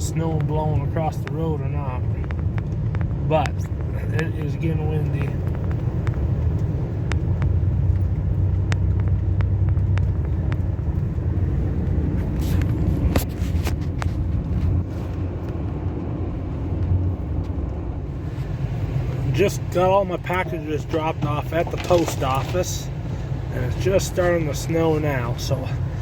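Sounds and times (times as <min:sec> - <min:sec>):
gusty wind buffeting microphone: 0:05.2 - 0:19.8.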